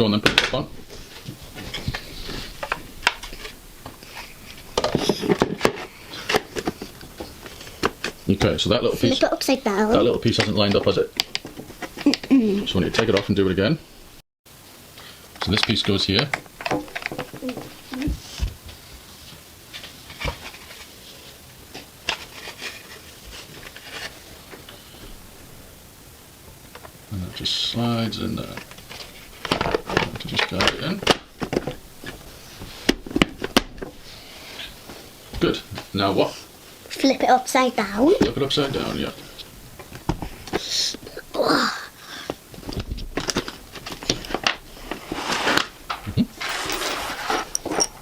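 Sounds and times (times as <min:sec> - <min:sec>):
plastic parts clicking and knocking: 0:04.7 - 0:08.7, 0:10.0 - 0:12.3, 0:15.4 - 0:18.2, 0:28.5 - 0:32.2.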